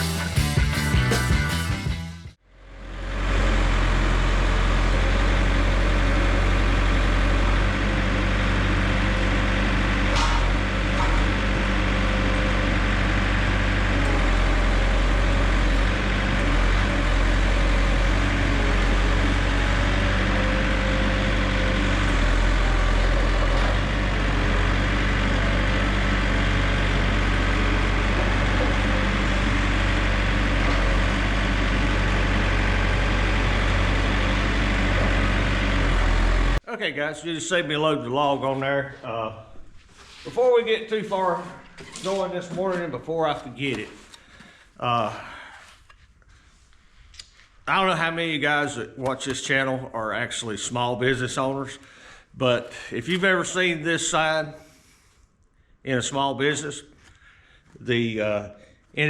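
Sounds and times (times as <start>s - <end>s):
heavy machine engine droning: 0.0s - 36.6s.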